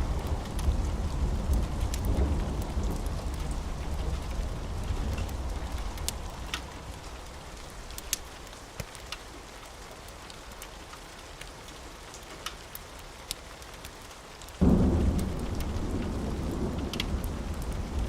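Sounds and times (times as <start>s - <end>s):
thunder rumble: 0.0s - 7.9s, 14.6s - 18.0s
steady rain: 0.0s - 18.0s
wood fire crackling: 0.0s - 18.0s.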